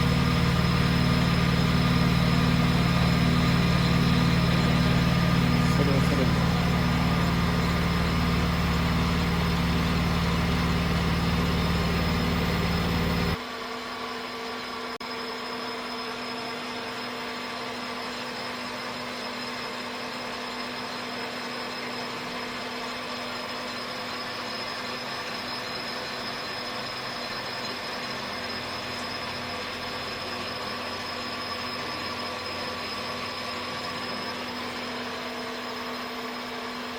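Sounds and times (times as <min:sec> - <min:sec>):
lathe humming: 0:00.0 - 0:13.4.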